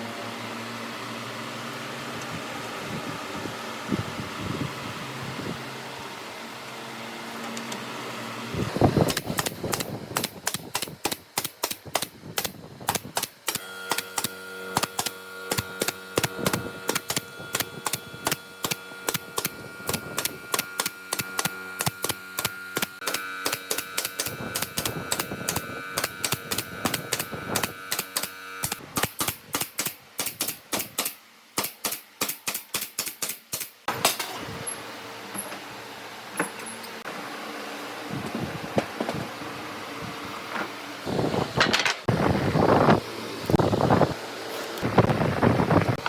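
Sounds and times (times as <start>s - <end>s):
mechanical hum: 0.0s - 46.0s
sharp clicks: 9.1s - 33.7s.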